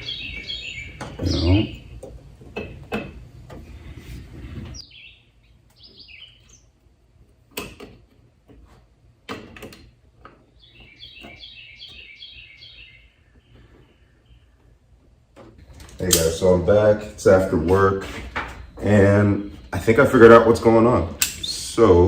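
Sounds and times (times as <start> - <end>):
small birds chirping: 0.0 - 2.2, 4.7 - 6.9, 10.2 - 15.0, 16.0 - 22.0.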